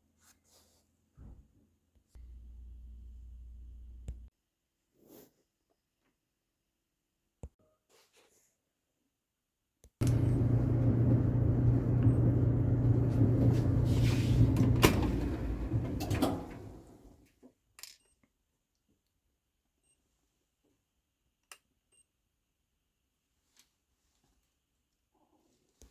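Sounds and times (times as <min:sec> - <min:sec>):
clothes dryer tumbling: 0:10.0 - 0:17.2.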